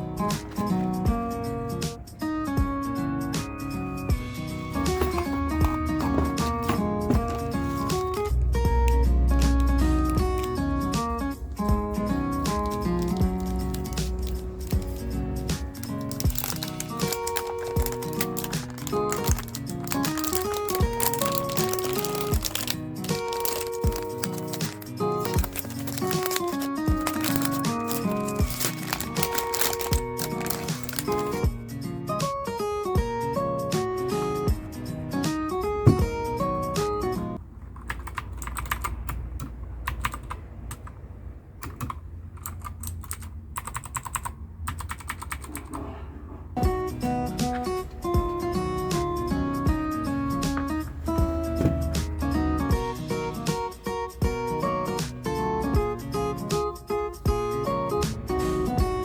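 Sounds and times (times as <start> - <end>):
acoustic guitar music: 0.0 - 37.4, 46.6 - 59.0
mechanical keyboard typing: 12.0 - 31.4, 37.8 - 40.9, 41.6 - 45.8.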